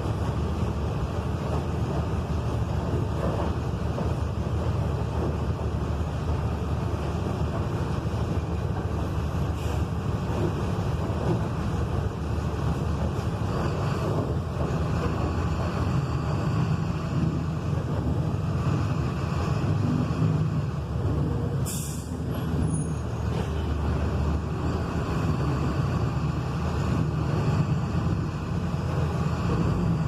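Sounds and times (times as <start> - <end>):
diesel truck engine running: 0.0 - 30.0
compressed air hiss: 21.7 - 22.1.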